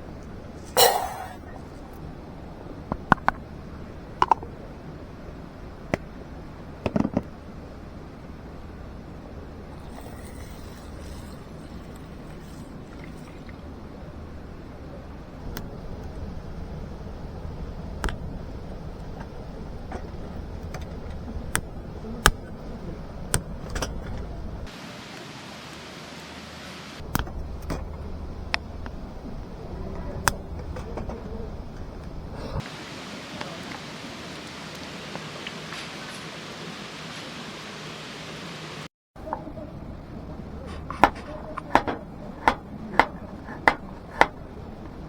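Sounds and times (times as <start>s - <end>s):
light clicks and knocks: 15.4s - 24.7s
sharp clicks and knocks: 18.0s - 24.7s, 27.0s - 32.2s, 40.8s - 44.4s.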